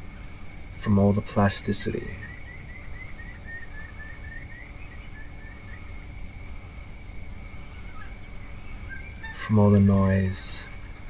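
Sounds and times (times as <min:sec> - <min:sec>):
bird calling short notes: 0:07.7 - 0:11.0.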